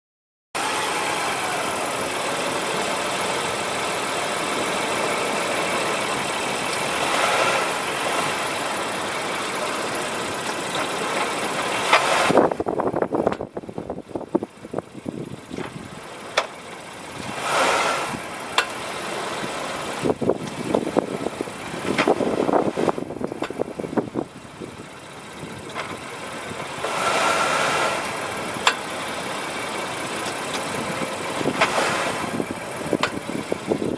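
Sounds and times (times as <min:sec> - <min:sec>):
car brakes squealing: 0:00.6 - 0:09.0
car and road noise: 0:00.6 - 0:33.9.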